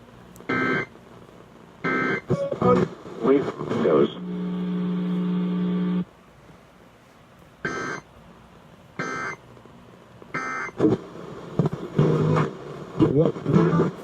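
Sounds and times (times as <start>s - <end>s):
low steady buzzing tone: 4.1s - 6.1s, 9.0s - 9.5s
short data bursts: 7.6s - 8.0s, 9.0s - 9.4s.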